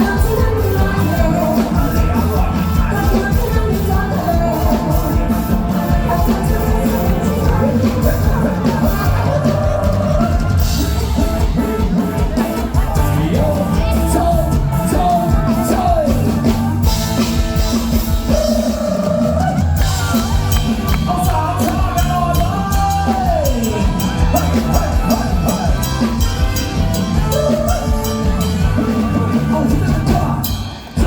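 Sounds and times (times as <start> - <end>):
woman singing: 0.0 - 11.1
drum kit beat: 0.0 - 31.0
live band playing: 0.0 - 31.0.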